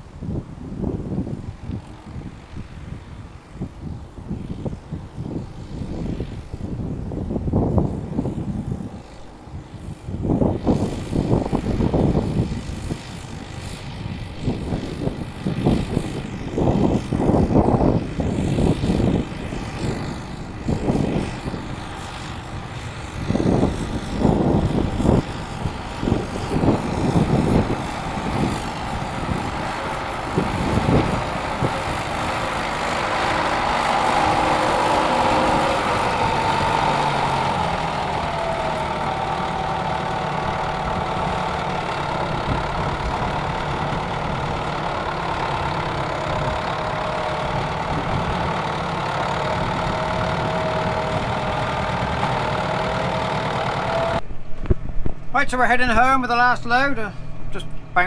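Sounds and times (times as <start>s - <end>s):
tractor engine running: 7.6s - 54.3s.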